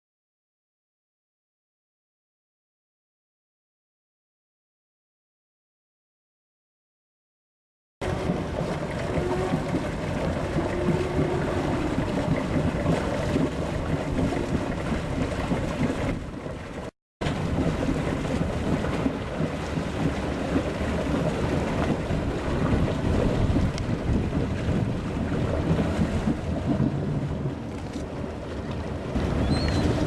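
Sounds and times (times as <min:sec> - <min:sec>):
motorboat running: 0:08.0 - 0:30.0
water rushing past: 0:08.0 - 0:30.0
wind buffeting microphone: 0:08.0 - 0:30.0.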